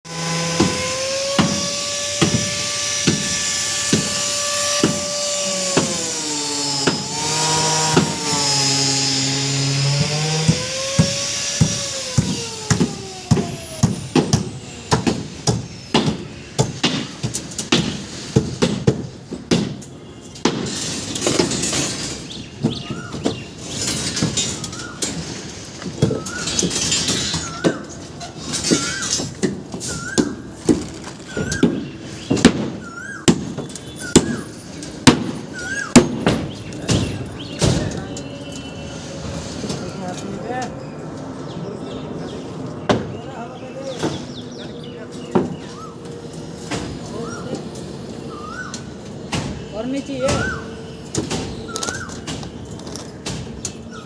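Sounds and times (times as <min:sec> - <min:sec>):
power tool whining: 0:00.1 - 0:18.4
rapid hammer blows: 0:00.1 - 0:22.8.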